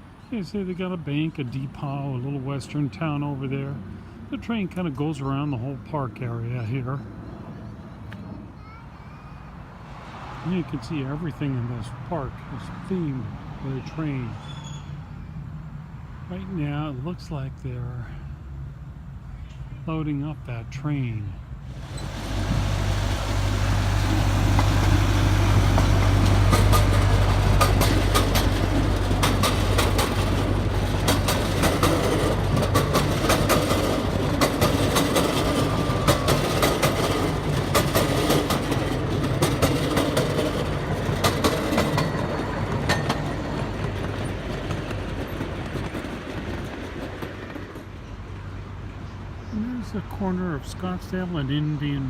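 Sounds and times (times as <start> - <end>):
low engine hum: 21.0 - 47.4
train wheels clacking over rail joints: 21.9 - 48.1.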